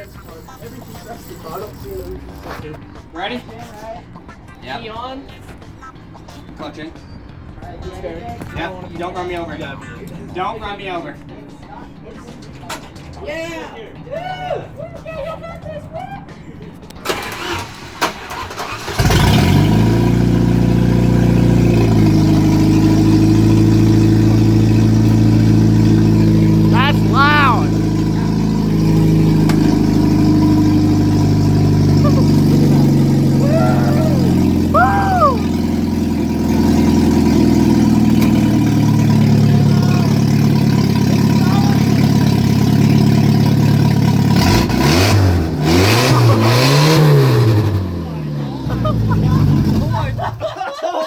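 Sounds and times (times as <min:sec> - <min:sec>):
car engine fast idle: 0:17.0 - 0:27.1, 0:27.7 - 0:44.8, 0:47.4 - 0:50.5
engine knocks: 0:17.1 - 0:26.7, 0:27.7 - 0:33.4, 0:35.4 - 0:44.9.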